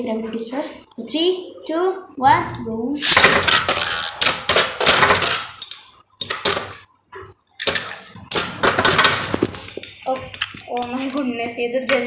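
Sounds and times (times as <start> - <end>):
spinning tops whirring and clattering: 3.0 - 6.8, 7.6 - 11.3.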